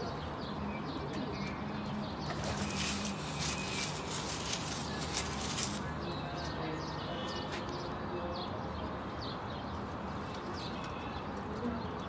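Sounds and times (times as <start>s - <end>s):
wings fluttering: 2.3s - 5.9s.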